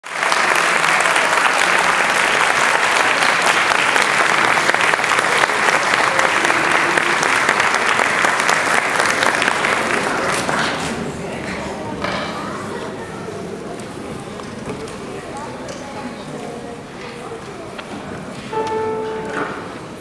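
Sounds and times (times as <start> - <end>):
audience applauding in a hall: 0.0 - 11.4.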